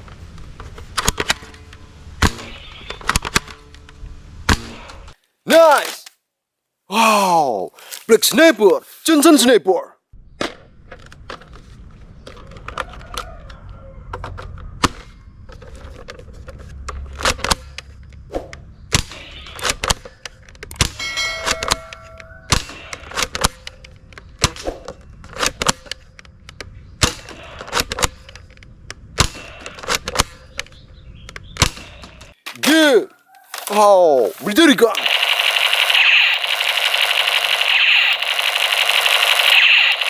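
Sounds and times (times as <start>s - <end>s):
plastic toy rifle clicking: 33.5s - 40.0s.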